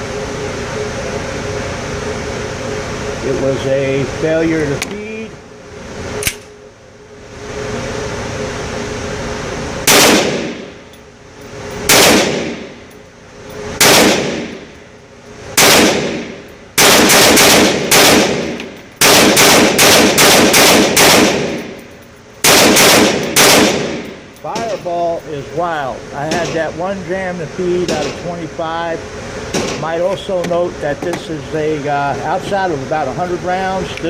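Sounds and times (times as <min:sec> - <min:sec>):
pistol shots with echo: 0:09.9 - 0:10.7, 0:11.9 - 0:12.7, 0:13.8 - 0:14.6, 0:15.6 - 0:21.8, 0:22.4 - 0:24.8.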